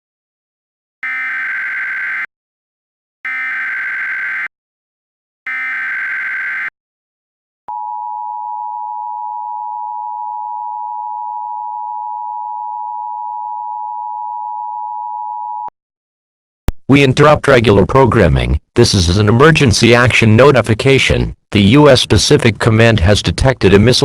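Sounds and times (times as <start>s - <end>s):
buzzing digital data tones: 1.0s - 2.3s, 3.3s - 4.5s, 5.5s - 6.7s
two-tone attention signal: 1.0s - 2.3s, 3.3s - 4.5s, 5.5s - 6.7s.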